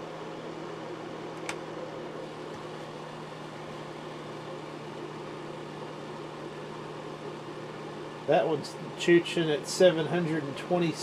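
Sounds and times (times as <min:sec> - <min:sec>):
space heater fan humming: 0:00.0 - 0:11.0.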